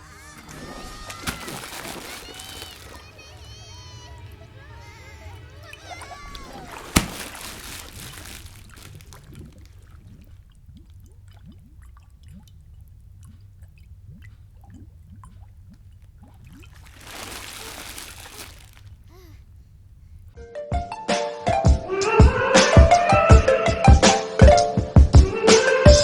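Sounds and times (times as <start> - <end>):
pouring water: 0.0 - 20.3
water dripping: 0.0 - 20.4
water splashing: 0.0 - 20.4.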